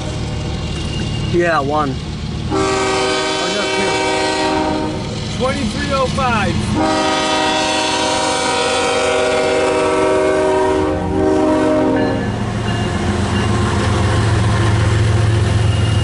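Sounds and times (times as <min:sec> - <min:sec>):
low rumble of passing train: 0:00.0 - 0:16.0
locomotive air horn chord: 0:02.5 - 0:05.0, 0:06.8 - 0:12.3.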